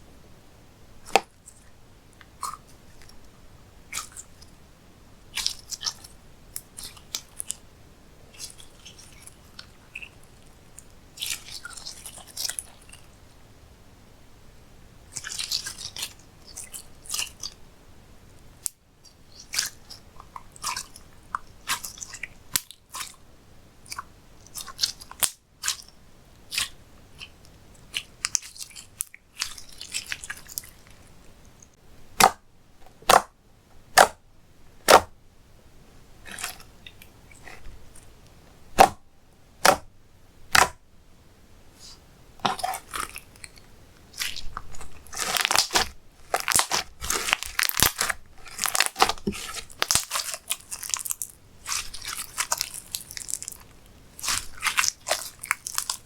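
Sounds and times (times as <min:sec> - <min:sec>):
slime squelching: 0:01.0 - 0:03.2, 0:03.9 - 0:04.5, 0:05.3 - 0:07.6, 0:08.3 - 0:13.1, 0:15.1 - 0:17.6, 0:19.1 - 0:23.2, 0:23.8 - 0:31.3, 0:36.2 - 0:39.0, 0:39.6 - 0:39.9, 0:40.5 - 0:40.8, 0:41.8 - 0:56.0.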